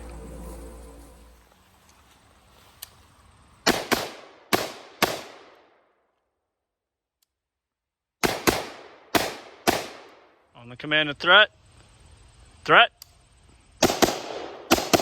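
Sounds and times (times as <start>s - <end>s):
rifle shots with echo: 3.6s - 5.8s, 8.2s - 10.4s, 13.8s - 15.0s.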